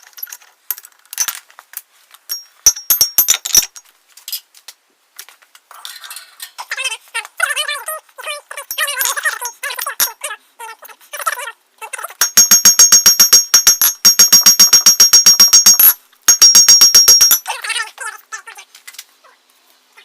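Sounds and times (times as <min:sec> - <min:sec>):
hammer ringing on anvil: 0:12.2 - 0:17.4.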